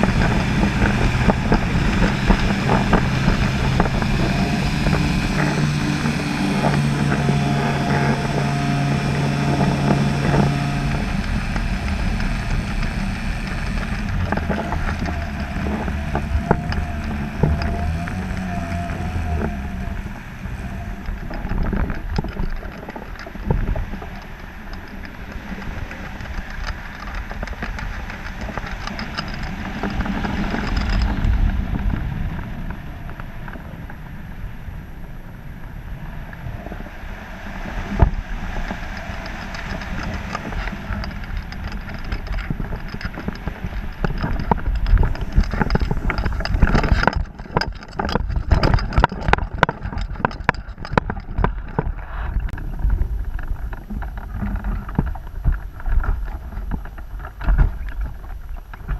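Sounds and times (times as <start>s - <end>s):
motor running: 0.0s - 31.7s
wind buffeting microphone: 0.0s - 58.9s.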